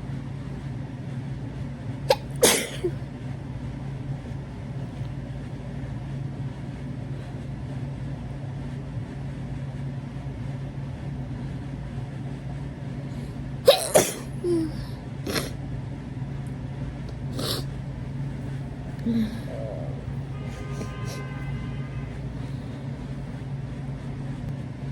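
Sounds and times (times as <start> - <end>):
steady low hum: 0.0 - 24.9
person sneezing: 2.1 - 3.0, 13.7 - 15.6, 17.3 - 17.7, 19.0 - 21.4
breathy sounds: 14.4 - 15.5, 17.1 - 17.8, 18.4 - 21.4.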